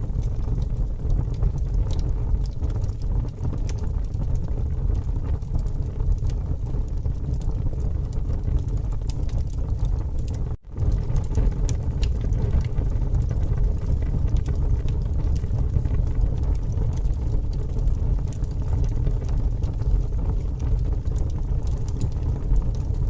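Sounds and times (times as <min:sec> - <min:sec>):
bonfire crackling: 0:00.0 - 0:23.0
fire pops and snaps: 0:00.0 - 0:23.0.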